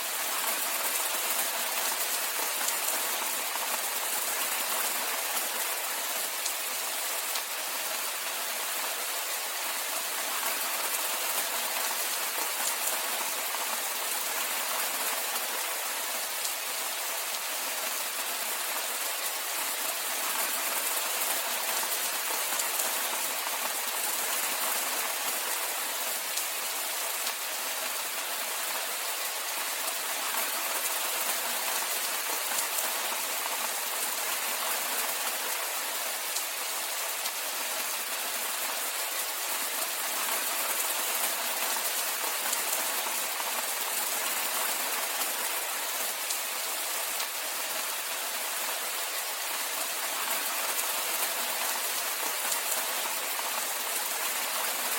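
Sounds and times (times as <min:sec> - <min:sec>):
steady rain on surfaces: 0:00.0 - 0:54.9.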